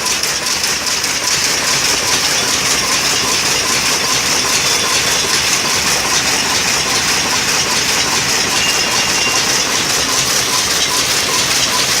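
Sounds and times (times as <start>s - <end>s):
power loom clattering: 0.0s - 12.0s.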